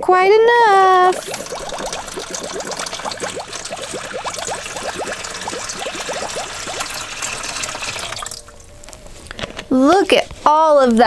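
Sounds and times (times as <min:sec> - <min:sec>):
water pouring into pool: 0:00.6 - 0:08.7.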